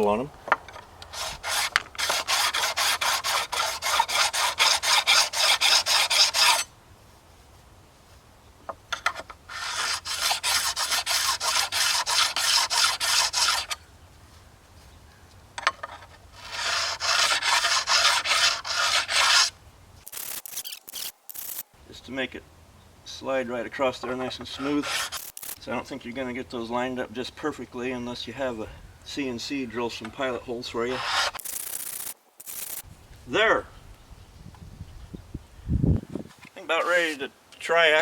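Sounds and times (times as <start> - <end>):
hand file rasping on metal: 1.1 - 6.7, 9.5 - 13.8, 16.4 - 19.5, 24.4 - 25.6, 30.9 - 31.4.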